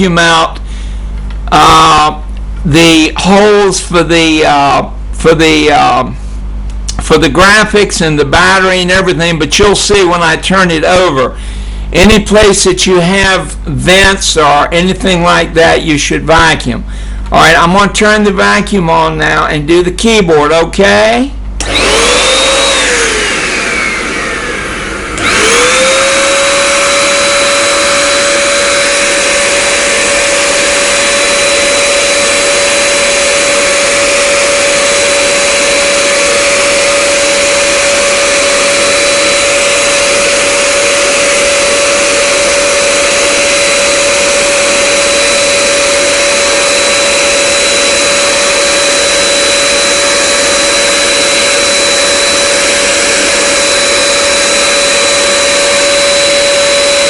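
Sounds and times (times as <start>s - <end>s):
handheld vacuum cleaner motor: 21.6s - 57.0s.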